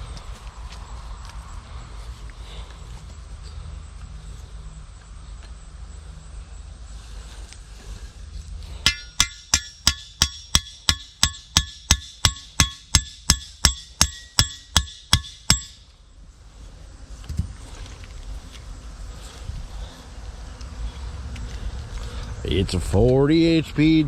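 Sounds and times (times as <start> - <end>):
hammer blows with ringing clink: 8.8 - 15.8.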